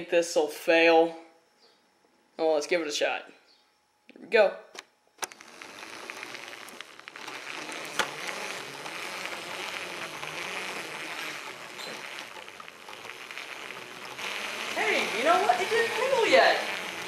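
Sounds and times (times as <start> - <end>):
toy train whirring rattle: 5.2 - 17.0.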